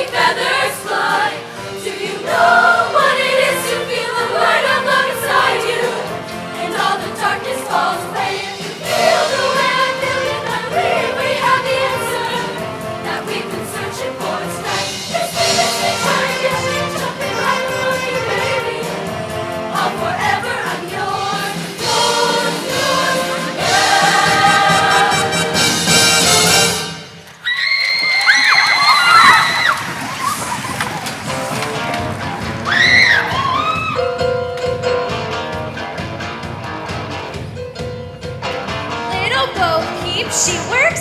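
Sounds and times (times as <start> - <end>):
choir singing with live band: 0.0 - 27.2.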